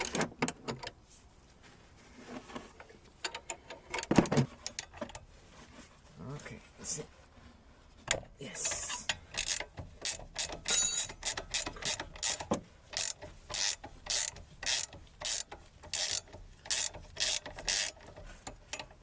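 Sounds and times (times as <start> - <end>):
ratchet wrench clicking: 8.6 - 19.0.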